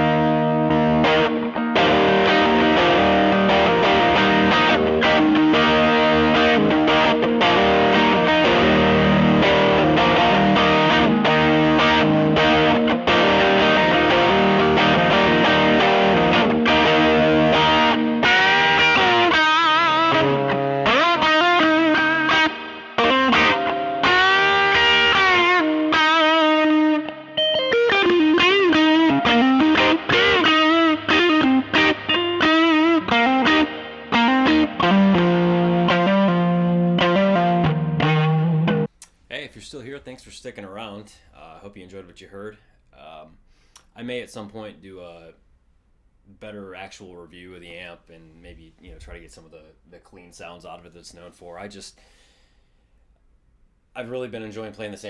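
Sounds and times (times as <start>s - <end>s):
overdriven electric guitar chords: 0.0s - 38.9s.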